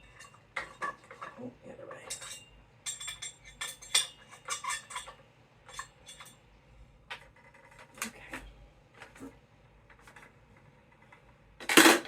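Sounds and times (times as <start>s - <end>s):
metal pole parts clinking: 0.0s - 6.4s.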